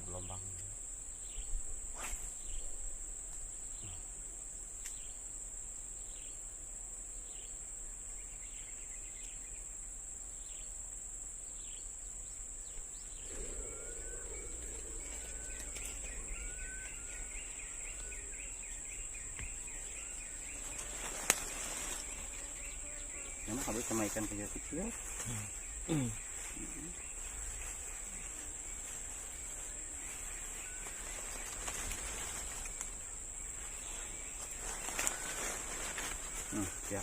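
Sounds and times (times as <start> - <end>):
birds chirping: 11.6 - 37.0
high-pitched insect drone: 13.2 - 37.0.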